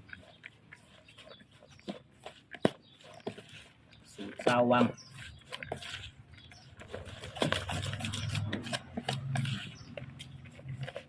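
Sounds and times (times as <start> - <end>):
food being tossed and mixed: 0.0 - 11.0.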